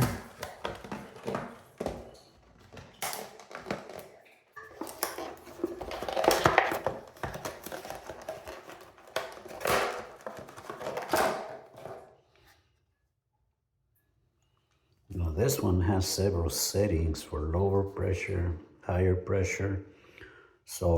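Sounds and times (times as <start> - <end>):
plastic shower head handled: 0.0 - 12.1.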